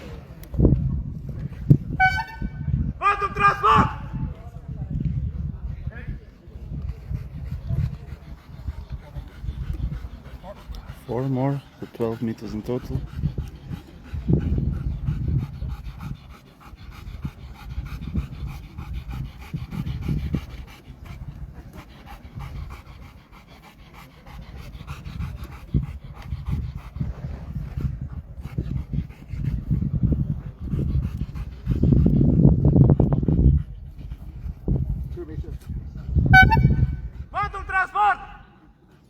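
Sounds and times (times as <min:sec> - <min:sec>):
dog panting: 0:06.6 - 0:37.3.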